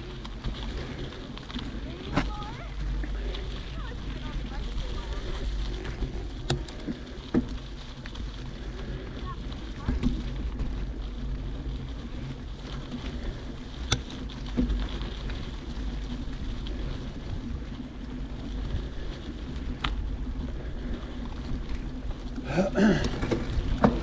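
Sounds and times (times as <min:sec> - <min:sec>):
tyre and wind rumble: 0:00.0 - 0:24.0
bike clicks and knocks: 0:04.8 - 0:08.4, 0:12.6 - 0:17.1, 0:19.5 - 0:20.1, 0:20.8 - 0:24.0.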